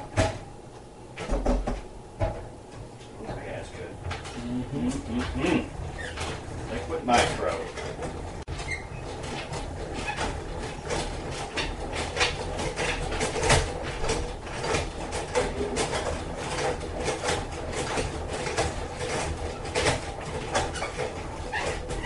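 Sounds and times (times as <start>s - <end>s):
mechanical clicking and rattling: 6.0s - 22.0s.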